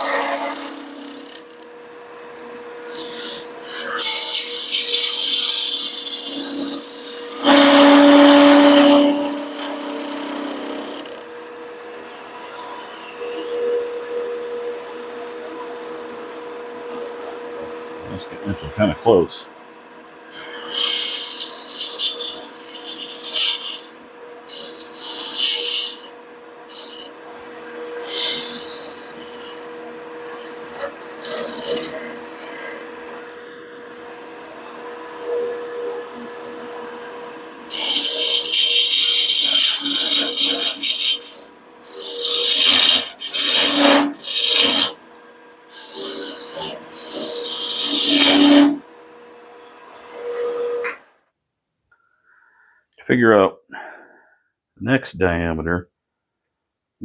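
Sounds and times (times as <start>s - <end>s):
lathe tool cutting wood: 0.0s - 13.8s, 16.8s - 19.4s, 20.2s - 49.0s
wood lathe motor whine: 0.0s - 51.0s.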